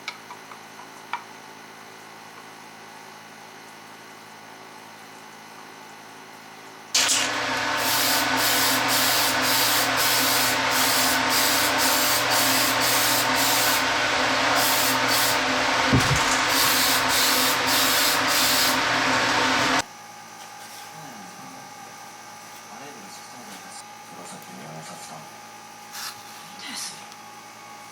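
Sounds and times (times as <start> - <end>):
power tool cutting: 7.0 - 19.8.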